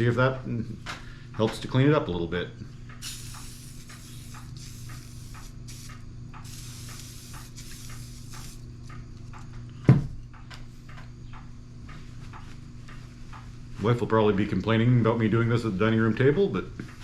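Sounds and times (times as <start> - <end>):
steady low hum: 0.0 - 17.0
aerosol can spraying: 3.0 - 8.7.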